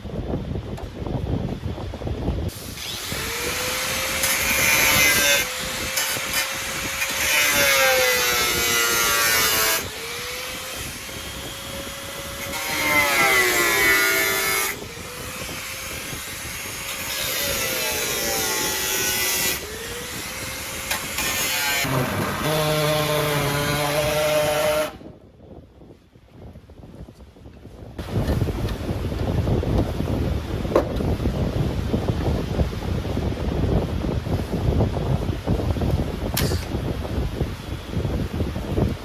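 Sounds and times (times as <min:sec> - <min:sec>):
power sander motor: 0:02.5 - 0:25.0
rasping scrape on metal panel: 0:20.9 - 0:25.0.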